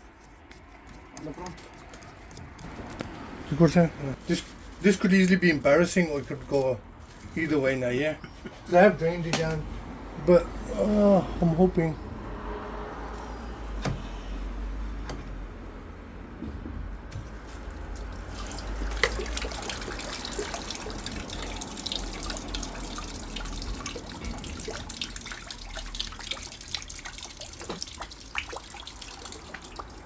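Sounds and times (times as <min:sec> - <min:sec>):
water trickling and dripping: 0:17.6 - 0:30.0.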